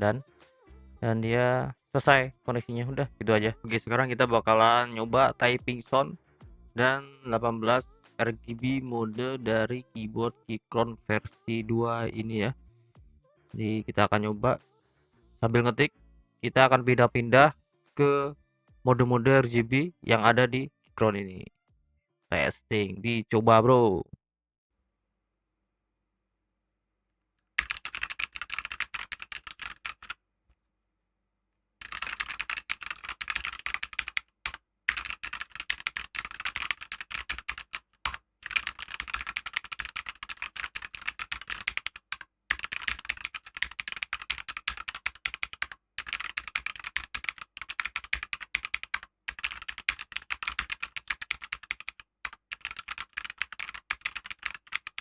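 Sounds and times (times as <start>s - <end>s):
fast typing on mechanical keyboard: 27.6s - 30.2s, 31.8s - 55.0s.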